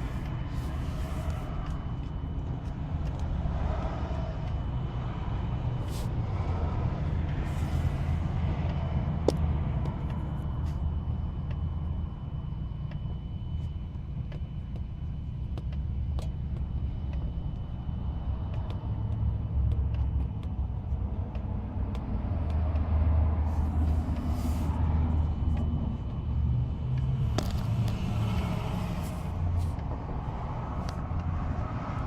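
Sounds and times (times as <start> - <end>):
car engine rumbling: 0.0 - 32.0
faint irregular clicks: 11.4 - 11.7.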